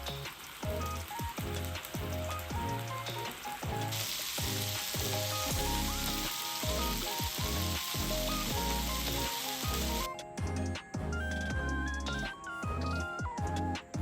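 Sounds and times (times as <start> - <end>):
background music: 0.0 - 14.0
food sizzling in a frying pan: 3.9 - 5.5, 6.1 - 10.1.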